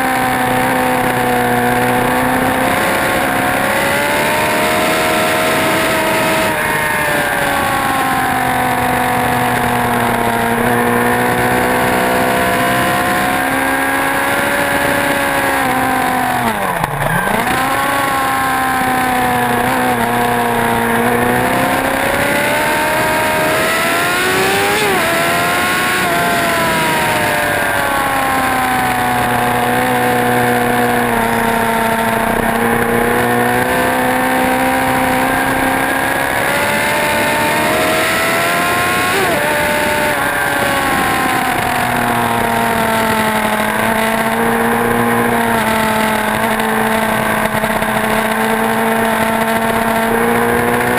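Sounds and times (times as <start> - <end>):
motorcycle engine revving: 0.0 - 50.9.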